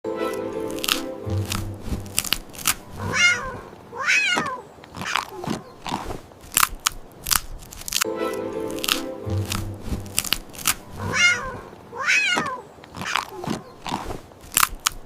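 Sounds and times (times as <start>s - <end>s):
cat crunching candy: 0.7s - 3.5s, 4.9s - 8.0s, 8.7s - 11.5s, 12.9s - 15.0s
cat meowing: 3.0s - 5.4s, 11.0s - 13.4s.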